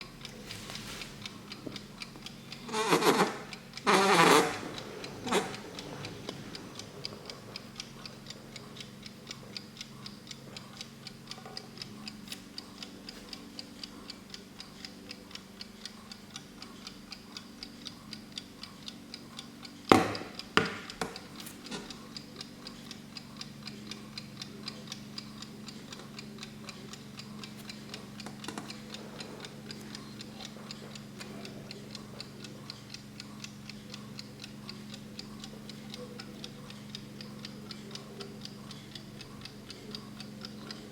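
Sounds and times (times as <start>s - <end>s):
alarm clock ticking: 0.0s - 40.9s
loud knocks: 19.9s - 21.2s.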